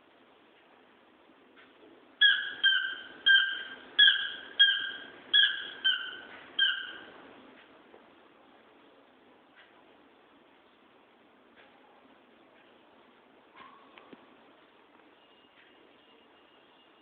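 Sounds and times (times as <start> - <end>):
squeaky toy squeaks: 2.2 - 7.1.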